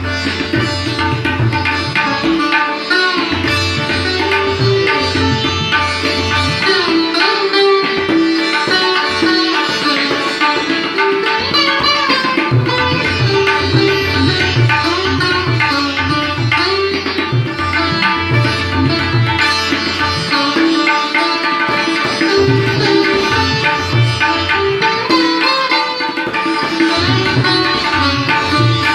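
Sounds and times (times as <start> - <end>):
sitar melody: 0.0 - 28.9
tabla drum strokes: 0.0 - 28.9.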